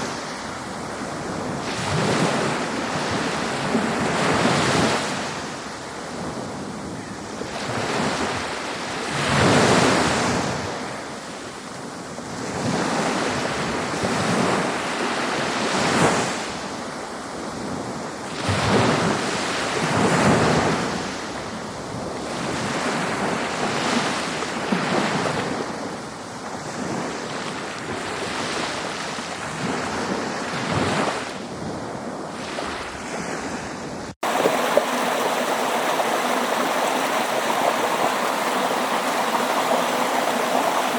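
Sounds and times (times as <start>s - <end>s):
ocean waves washing ashore: 0.0s - 40.9s
rushing stream: 34.2s - 40.9s.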